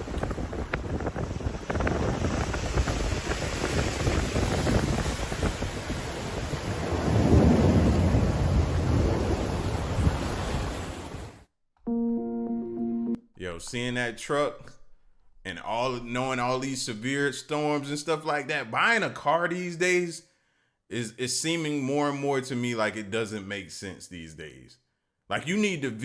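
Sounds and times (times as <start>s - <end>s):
wind buffeting microphone: 0.0s - 11.3s
heavy storm rain: 0.0s - 11.4s.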